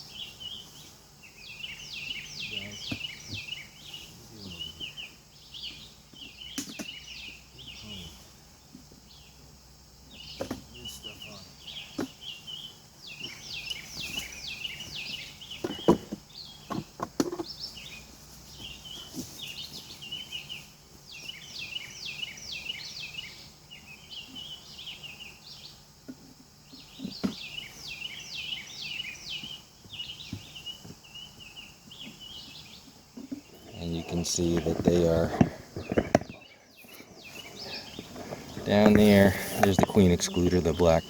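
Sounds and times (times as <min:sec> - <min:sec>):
songbird singing: 0:00.0 - 0:41.0
wooden knocks of hive frames: 0:02.7 - 0:03.6, 0:06.1 - 0:07.4, 0:10.2 - 0:10.8, 0:11.9 - 0:12.3, 0:14.8 - 0:17.7, 0:26.0 - 0:27.6, 0:34.2 - 0:36.5, 0:37.9 - 0:40.5.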